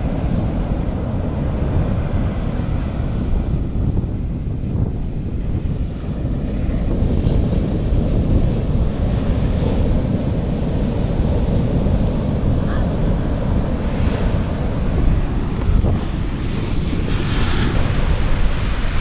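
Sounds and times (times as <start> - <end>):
wind buffeting microphone: 0.0 - 19.0
sea waves washing onto beach: 5.3 - 19.0.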